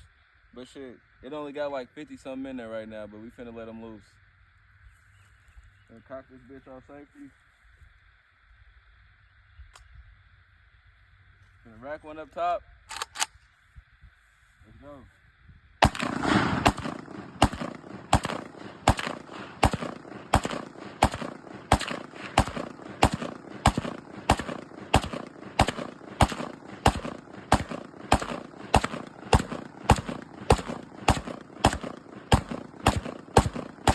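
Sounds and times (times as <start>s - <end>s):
pistol gunshots with echo: 15.8s - 33.9s.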